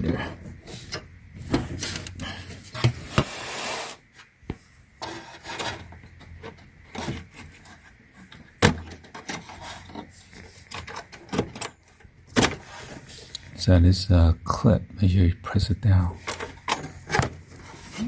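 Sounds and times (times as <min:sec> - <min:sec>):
scraping rub: 0:01.8 - 0:04.2, 0:12.6 - 0:13.4
clicks and knocks in computer case: 0:08.4 - 0:09.6, 0:10.7 - 0:12.6.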